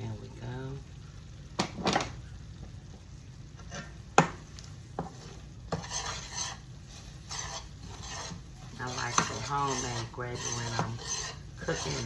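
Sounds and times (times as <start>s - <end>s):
utensil scraping gravy in a pan: 3.5s - 12.0s.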